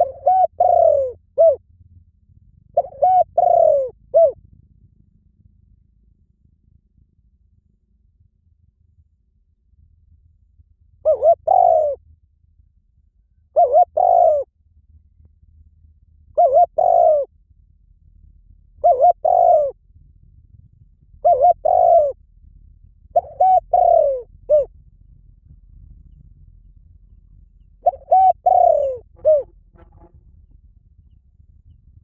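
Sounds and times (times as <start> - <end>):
dove cooing: 0.0 - 1.6, 2.7 - 4.4, 11.0 - 12.0, 13.6 - 14.5, 16.4 - 17.3, 18.8 - 19.8, 21.2 - 22.2, 23.1 - 24.7, 27.6 - 30.2.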